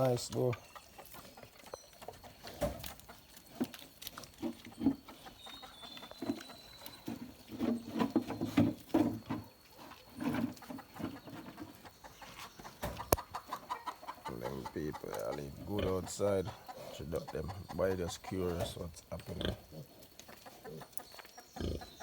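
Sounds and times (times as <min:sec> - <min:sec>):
pig grunting: 0:14.2 - 0:20.9, 0:21.5 - 0:22.0.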